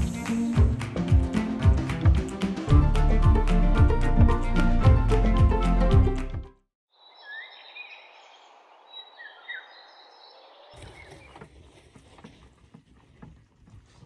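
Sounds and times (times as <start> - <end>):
birds chirping: 7.0 - 11.4.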